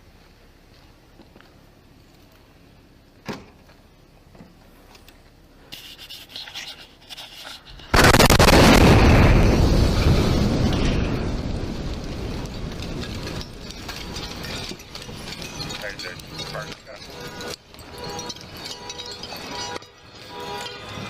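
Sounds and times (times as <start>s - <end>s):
loud explosion blast: 7.9s - 13.3s.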